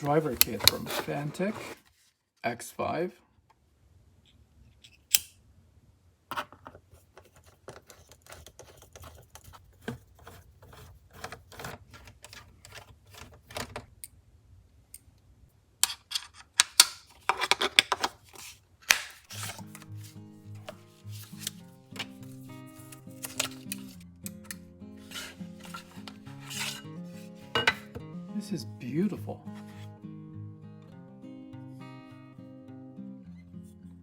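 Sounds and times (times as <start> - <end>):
background music: 19.3 - 34.0.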